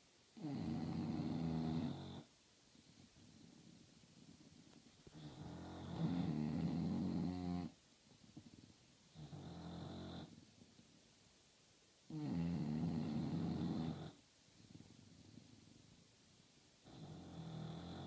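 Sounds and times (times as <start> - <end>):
dog snoring: 0.4 - 2.3, 2.9 - 7.8, 8.4 - 10.4, 12.1 - 15.9, 16.8 - 18.0.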